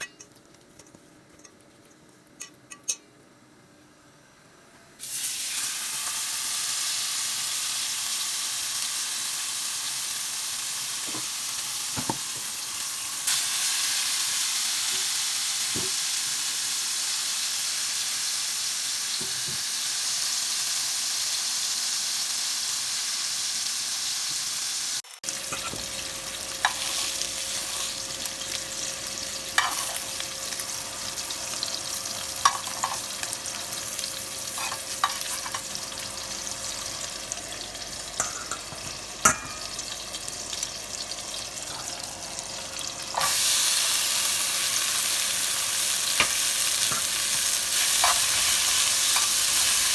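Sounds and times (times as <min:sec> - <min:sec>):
food sizzling in hot oil: 0:05.0 - 0:49.9
spoon scraping a pan: 0:25.5 - 0:26.0, 0:29.6 - 0:30.1, 0:32.0 - 0:33.6, 0:34.5 - 0:36.0, 0:38.2 - 0:39.8, 0:46.2 - 0:49.9.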